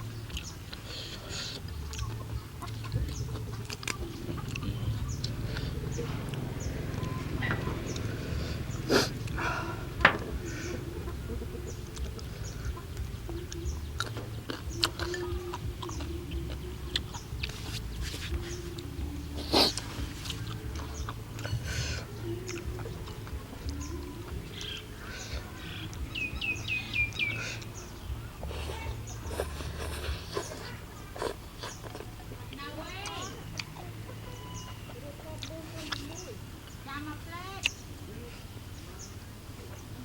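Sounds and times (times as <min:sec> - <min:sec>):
chewing and slurping noodles: 0:13.4 - 0:24.8, 0:28.4 - 0:32.2
bird chirps: 0:23.6 - 0:30.8, 0:33.1 - 0:36.8.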